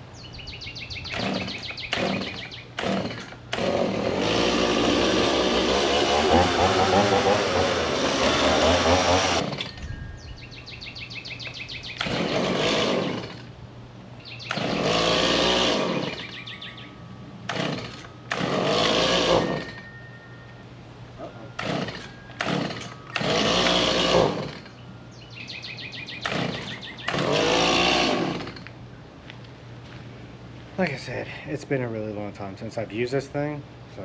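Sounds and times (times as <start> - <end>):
chainsaw revving and idling: 1.1 - 9.7, 12.0 - 13.5, 14.5 - 16.4, 17.5 - 19.9, 21.6 - 24.8, 26.2 - 28.7.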